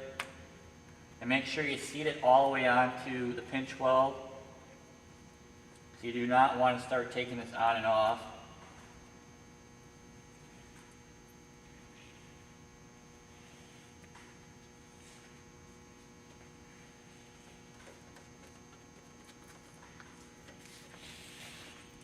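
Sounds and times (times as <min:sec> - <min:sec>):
faint electrical mains hum: 0:00.0 - 0:22.0
handling rustles and ticks: 0:17.7 - 0:21.3.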